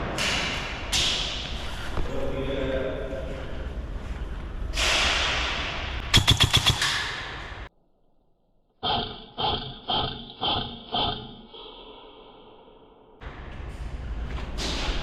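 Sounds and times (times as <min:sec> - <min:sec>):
airsoft gun shots: 0:06.1 - 0:07.7.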